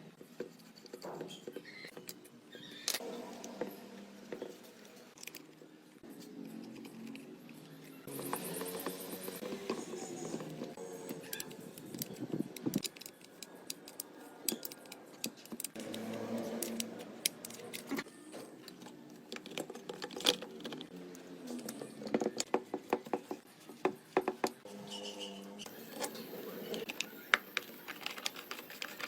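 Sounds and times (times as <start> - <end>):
metal parts and tools clinking: 4.4 - 22.6, 25.7 - 29.0.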